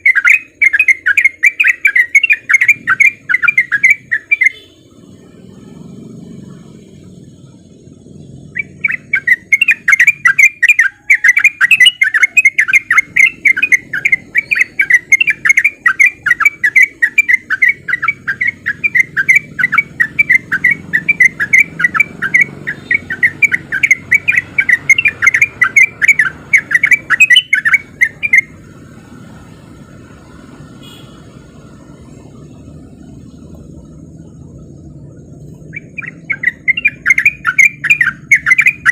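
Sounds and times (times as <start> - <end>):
bird singing fast chattering notes: 0.0 - 38.9
low background rumble: 31.3 - 37.0.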